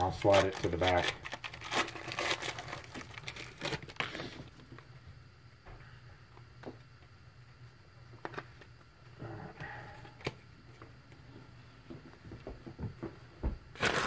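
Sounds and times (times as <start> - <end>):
foil pack rustling: 0.0 - 4.3, 13.8 - 14.0.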